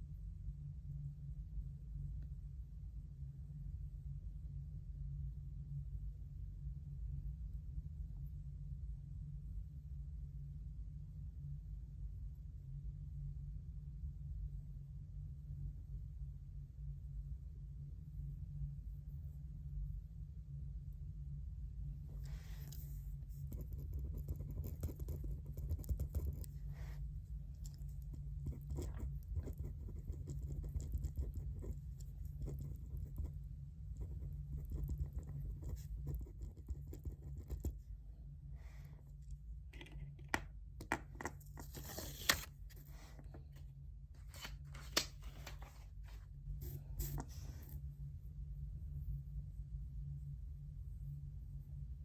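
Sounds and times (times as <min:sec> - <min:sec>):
steady low hum: 0:00.0 - 0:52.0
writing scratching on paper: 0:22.2 - 0:27.0, 0:27.6 - 0:37.8, 0:46.0 - 0:47.8
paper rustling: 0:41.3 - 0:43.6, 0:44.2 - 0:47.6.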